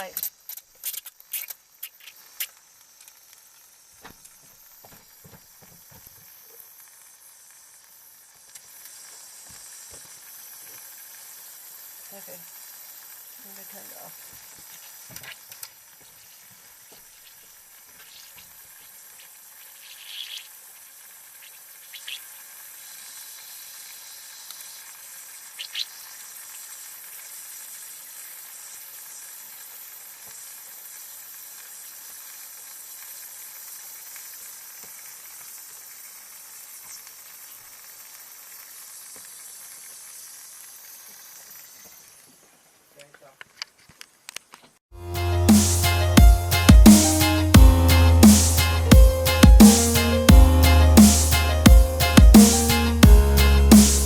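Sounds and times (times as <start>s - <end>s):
water hissing through pipes: 3.8s - 42.3s.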